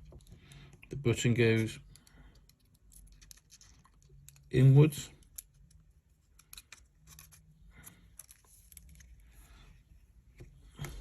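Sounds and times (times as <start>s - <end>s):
small parts ticking and scraping: 0.0s - 9.4s.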